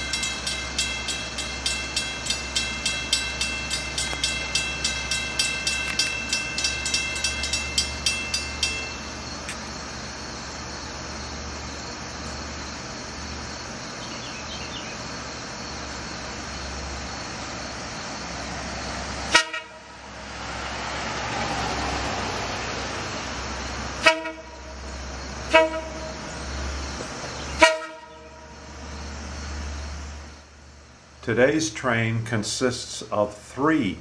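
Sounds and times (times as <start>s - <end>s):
idling diesel locomotive rumble: 0.0s - 34.0s
train horn toots: 19.3s - 19.9s, 24.0s - 24.8s, 25.4s - 26.3s, 27.5s - 28.7s.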